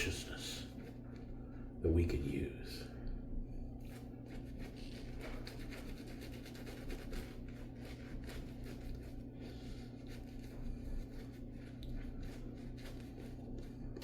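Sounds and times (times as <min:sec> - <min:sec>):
shaving brush scrubbing: 0:03.8 - 0:14.0.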